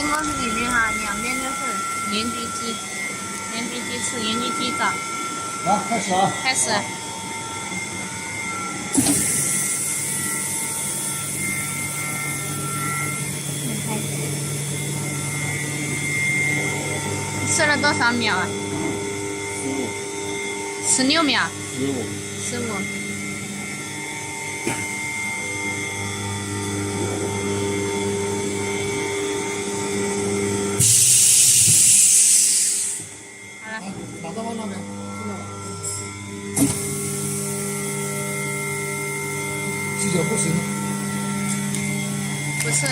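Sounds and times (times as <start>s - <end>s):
vacuum pump humming: 0.0s - 42.9s
loud hiss of air: 30.8s - 33.1s.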